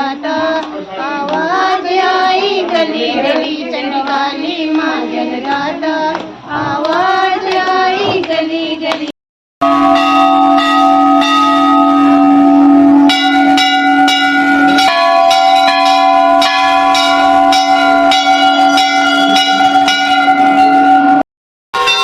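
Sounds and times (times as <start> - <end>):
bells ringing: 9.6 - 21.2, 21.8 - 22.0.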